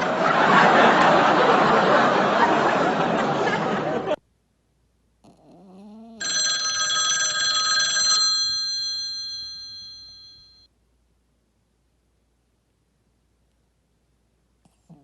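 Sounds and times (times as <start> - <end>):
bright bell-like chime: 6.2 - 10.7.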